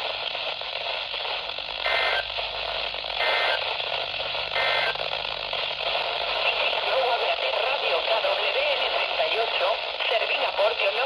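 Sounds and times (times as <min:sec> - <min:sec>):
radio static: 0:00.0 - 0:11.0
two-tone digital data buzzes: 0:01.8 - 0:02.4, 0:03.2 - 0:03.7, 0:04.5 - 0:05.2.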